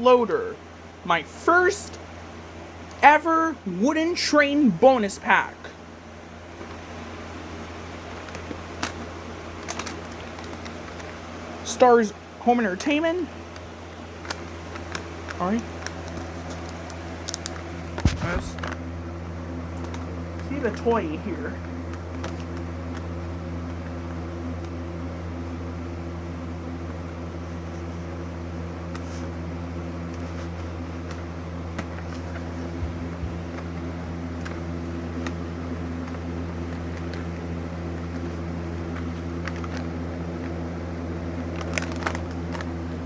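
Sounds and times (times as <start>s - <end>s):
low mechanical hum: 0.0s - 43.0s
packaging clicks and handling: 6.5s - 11.8s, 12.7s - 18.8s, 19.7s - 25.6s, 30.0s - 40.6s, 41.4s - 42.8s.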